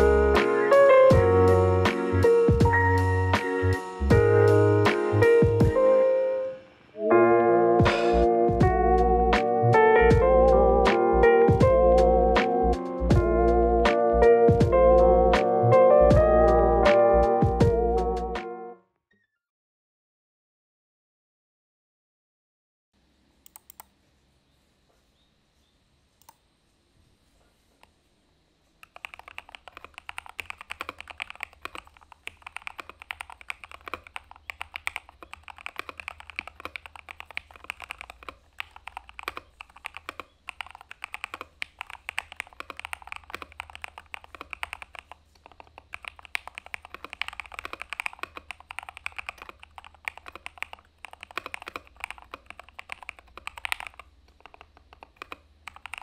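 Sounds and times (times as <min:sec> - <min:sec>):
typing on mechanical keyboard: 0:28.8 - 0:56.0.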